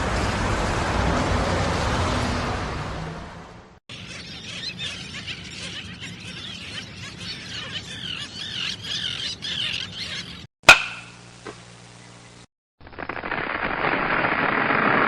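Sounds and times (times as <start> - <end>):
seabirds squawking: 3.9 - 10.5
sharp crack: 10.6 - 11.6, 12.8 - 15.0.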